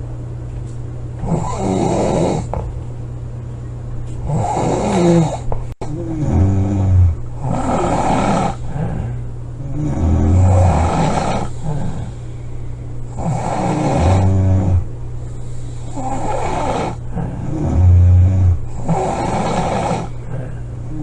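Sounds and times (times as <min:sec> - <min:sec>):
woman snoring: 0:01.2 - 0:02.6, 0:04.3 - 0:12.2, 0:13.1 - 0:14.9, 0:15.8 - 0:21.0
breathing: 0:08.5 - 0:09.3, 0:11.4 - 0:12.8, 0:15.2 - 0:16.3, 0:17.0 - 0:18.5, 0:19.3 - 0:20.7.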